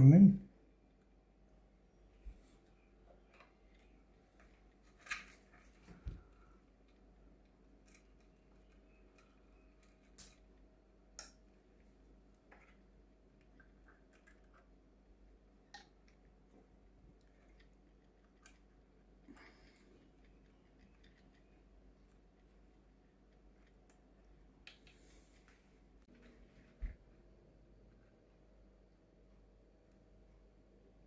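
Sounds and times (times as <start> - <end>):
faint clicks and rustles: 2.1 - 28.2.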